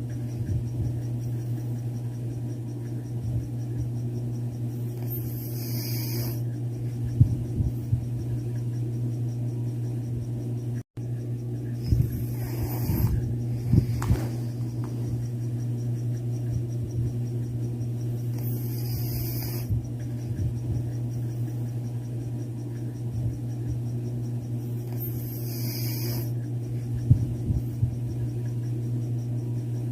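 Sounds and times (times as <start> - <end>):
steady low hum: 0.0 - 29.9
cat snoring: 5.0 - 6.4, 11.8 - 14.0, 18.4 - 19.7, 24.9 - 26.4.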